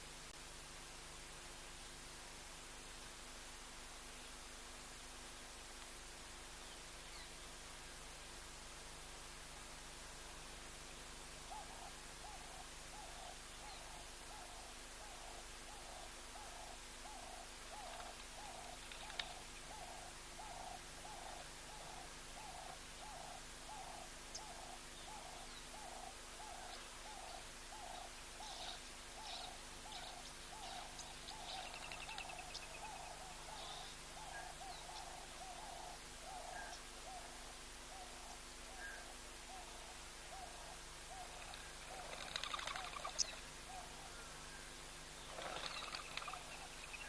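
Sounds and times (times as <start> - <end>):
bird hooting low: 11.4 - 47.0.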